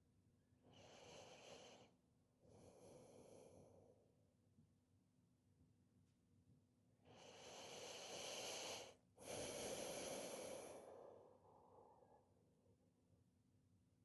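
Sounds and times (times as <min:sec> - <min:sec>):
person breathing deeply: 0:07.1 - 0:12.4.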